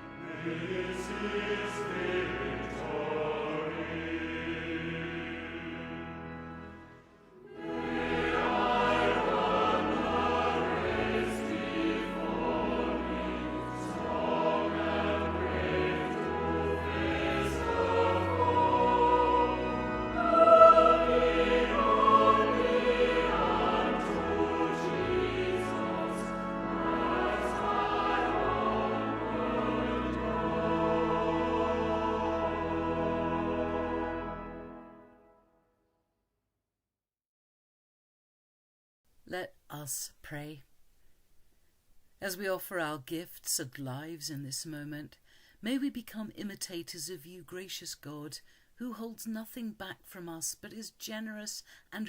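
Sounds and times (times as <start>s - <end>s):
choir singing sacred piece: 0.0s - 35.3s
held accompaniment chords: 0.0s - 35.4s.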